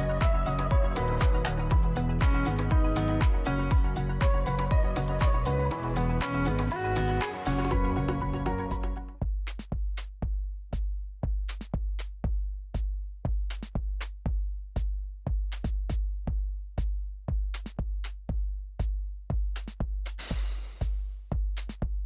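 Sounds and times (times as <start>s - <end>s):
deep bass hits: 0.0s - 9.2s
drum machine beat: 0.0s - 22.0s.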